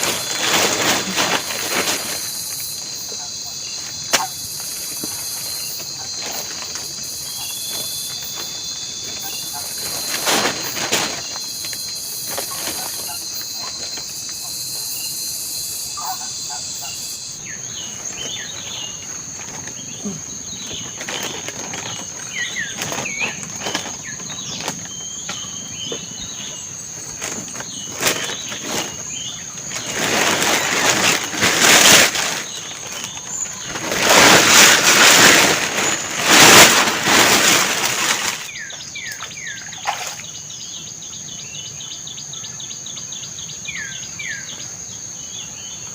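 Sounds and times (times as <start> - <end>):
rushing rustling noise: 0.0 - 3.0, 4.0 - 14.1, 17.7 - 40.3
high insect drone: 0.0 - 45.9
bird chirps: 16.0 - 31.7, 37.4 - 45.9.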